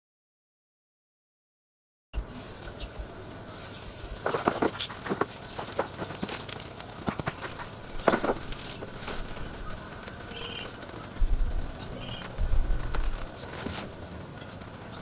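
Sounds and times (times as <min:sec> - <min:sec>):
rustling: 0:02.2 - 0:15.0
handling clicks and knocks: 0:04.2 - 0:11.4.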